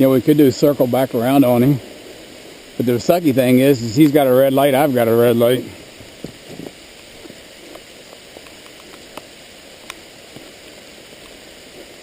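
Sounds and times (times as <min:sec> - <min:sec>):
steady rain hiss: 0:00.0 - 0:12.0
raindrops ticking close by: 0:05.9 - 0:12.0.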